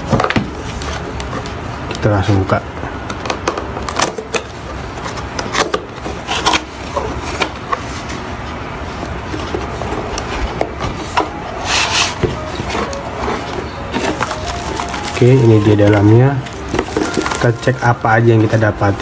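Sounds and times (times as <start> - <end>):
cardboard packaging taps and rustles: 13.9 - 17.8.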